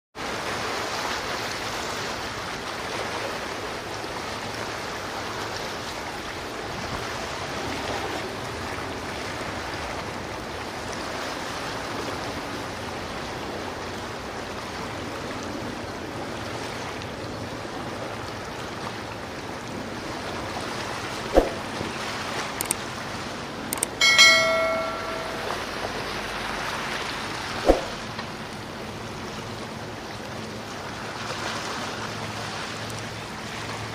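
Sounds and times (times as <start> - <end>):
wind: 0.1 - 33.9
water rushing: 0.2 - 33.9
sharp knocks: 21.4 - 21.6, 27.7 - 28.0
bell-like ring: 24.0 - 25.9.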